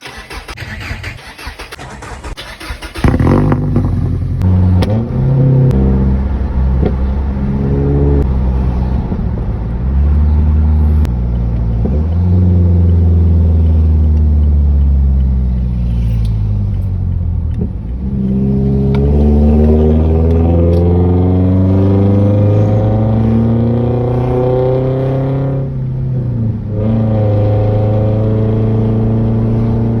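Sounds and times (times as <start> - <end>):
exhaust pops: 0.0 - 5.0
engine revving through exhaust: 2.9 - 30.0.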